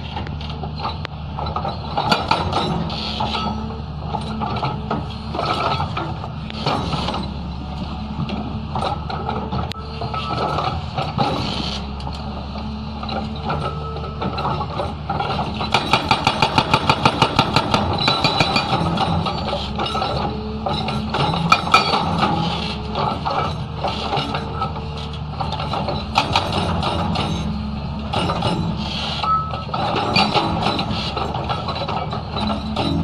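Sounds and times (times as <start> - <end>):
diesel engine running: 0.0 - 33.0
hydraulic rock breaker hammering: 1.0 - 7.4, 13.0 - 33.0
metallic clanks: 13.1 - 33.0.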